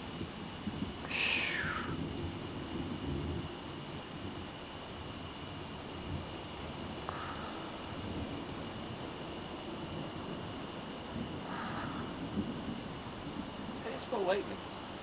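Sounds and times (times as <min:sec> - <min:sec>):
crickets trilling: 0:00.0 - 0:15.0
insect calling in short pulses: 0:01.0 - 0:02.2.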